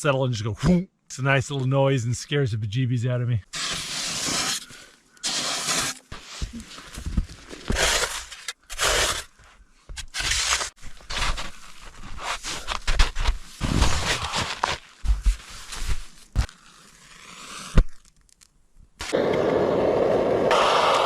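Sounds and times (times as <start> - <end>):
tool scraping packed snow: 3.5 - 17.8.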